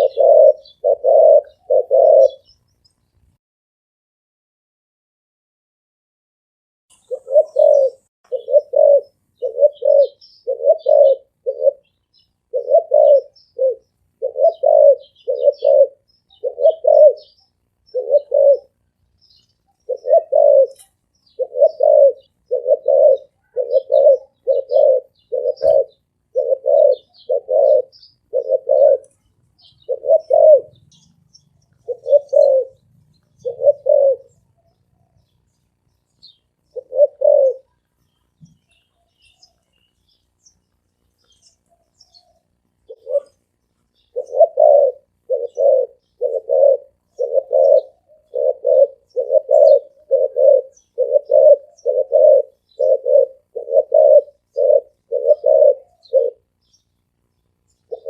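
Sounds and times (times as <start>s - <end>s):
dove cooing: 0.0s - 2.6s, 6.9s - 56.6s, 57.8s - 58.0s
small birds chirping: 0.0s - 3.4s, 6.9s - 58.0s.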